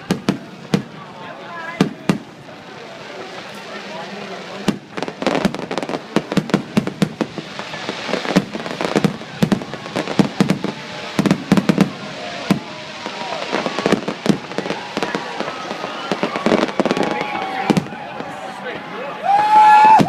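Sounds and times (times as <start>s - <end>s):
fireworks bursts and crackling bangs: 0.0s - 20.0s.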